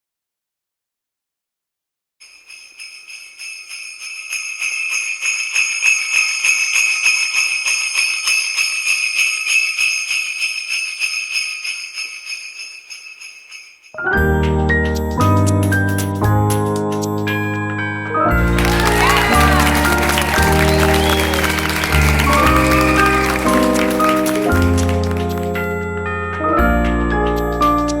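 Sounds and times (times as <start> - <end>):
jingle bells shaken: 2.2 - 14.0, 18.4 - 25.9.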